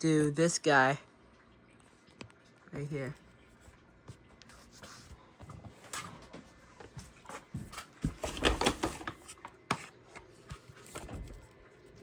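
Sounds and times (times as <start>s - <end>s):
knocking and rattling: 7.6s - 9.8s
plastic parts clicking and knocking: 8.0s - 11.4s.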